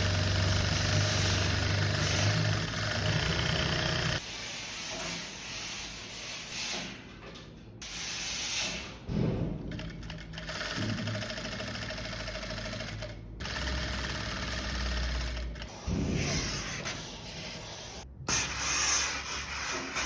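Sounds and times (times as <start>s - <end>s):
machine motor humming and hissing: 0.0s - 4.2s
workshop noise: 0.0s - 20.0s.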